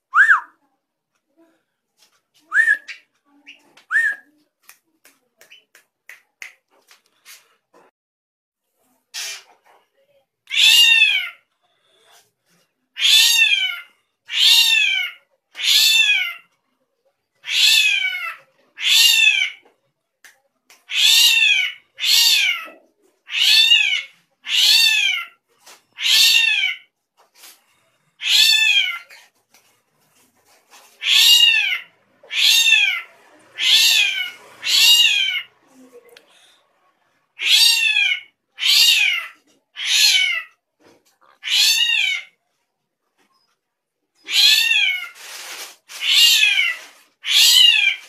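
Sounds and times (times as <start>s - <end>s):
bird calling with meow-like cries: 31.0s - 35.5s, 37.4s - 40.6s, 41.4s - 42.4s, 44.2s - 45.2s, 46.0s - 48.0s.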